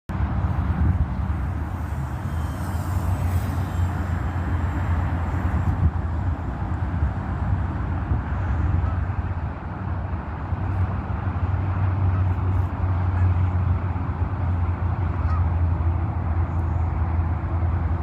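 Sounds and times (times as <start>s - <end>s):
faint goose honks: 15.2s - 15.6s.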